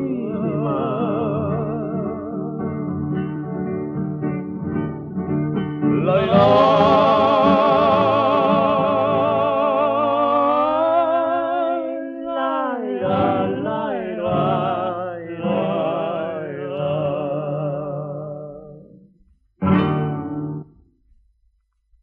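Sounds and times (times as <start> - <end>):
men singing with vibrato: 0.0 - 2.6, 5.9 - 18.8
guitar accompaniment: 0.0 - 20.8.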